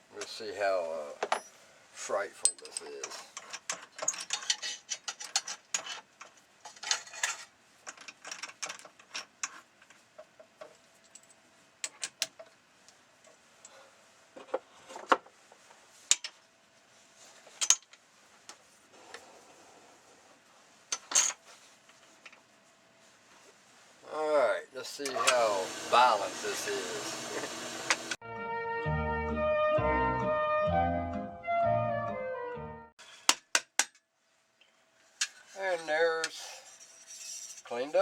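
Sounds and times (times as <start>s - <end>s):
metal parts clinking and rattling: 2.4s - 10.0s, 10.6s - 12.5s, 17.5s - 18.0s, 20.9s - 21.4s.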